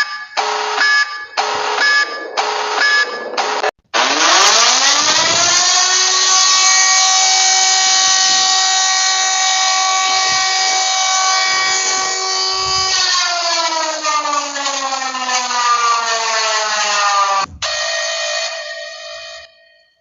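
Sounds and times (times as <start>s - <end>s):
civil-defence siren wailing: 0.0s - 20.0s.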